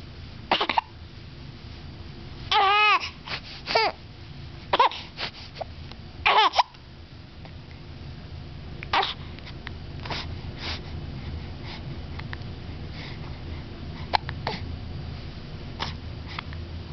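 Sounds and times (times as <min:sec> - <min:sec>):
steady low rumble: 0:00.0 - 0:16.9
baby hiccupping: 0:06.3 - 0:06.8, 0:08.9 - 0:09.2.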